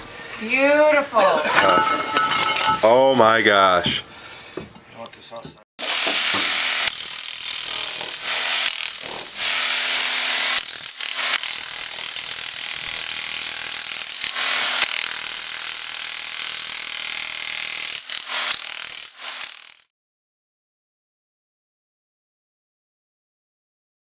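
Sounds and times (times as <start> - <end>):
power tool whining: 5.8 - 19.9.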